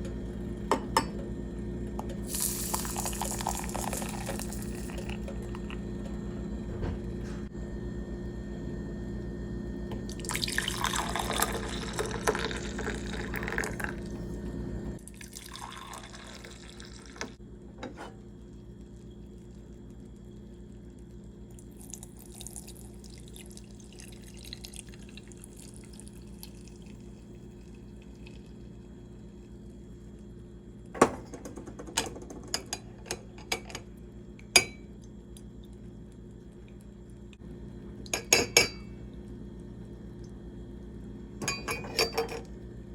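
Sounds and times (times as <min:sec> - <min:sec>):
steady hum: 0:00.0 - 0:42.9
liquid pouring and splashing: 0:15.1 - 0:17.2.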